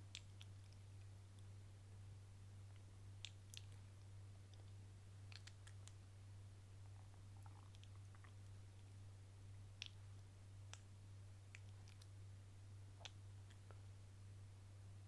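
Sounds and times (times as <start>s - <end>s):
steady low hum: 0.0s - 15.0s
faint sharp clicks: 2.7s - 6.0s, 10.7s - 10.9s.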